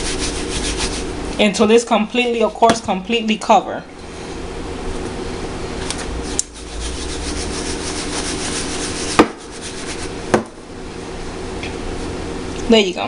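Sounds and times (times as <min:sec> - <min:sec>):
chicken rubbed in flour: 0:00.0 - 0:01.2, 0:06.2 - 0:10.2
sharp knocks: 0:09.2 - 0:09.4.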